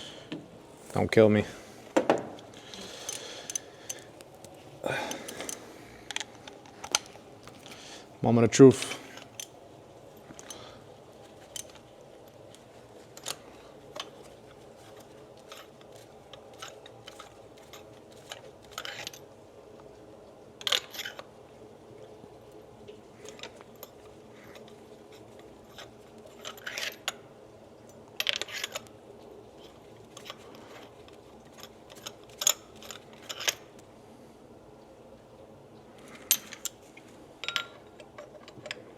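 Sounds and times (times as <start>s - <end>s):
metal tools clinking: 37.4s - 38.8s.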